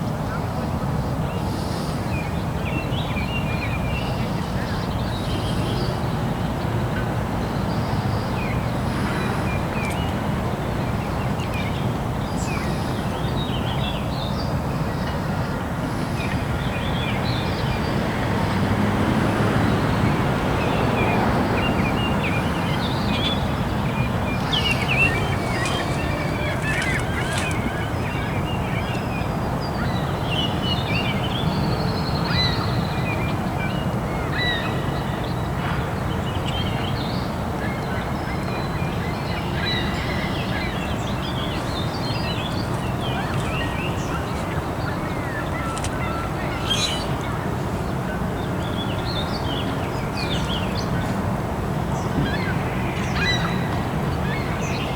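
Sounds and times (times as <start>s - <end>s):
bird chirps and calls: 22.3s - 28.1s, 41.2s - 47.4s.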